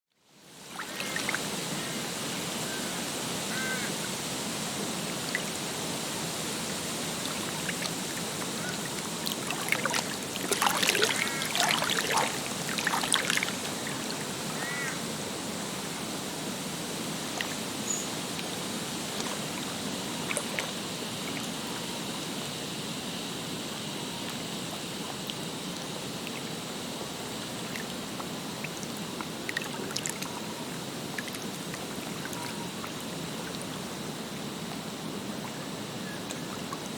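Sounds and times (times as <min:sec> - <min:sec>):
water lapping and trickling: 0:00.6 - 0:36.9
water splashing: 0:00.7 - 0:01.9, 0:06.3 - 0:15.0
bird calls: 0:14.6 - 0:15.0.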